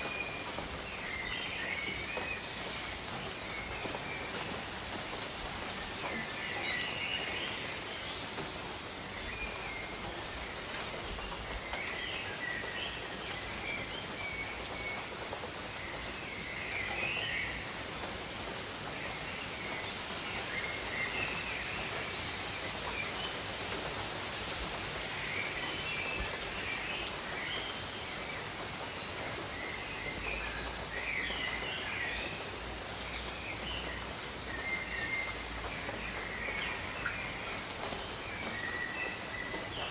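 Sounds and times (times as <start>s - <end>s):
rain falling on leaves: 0.0s - 39.9s.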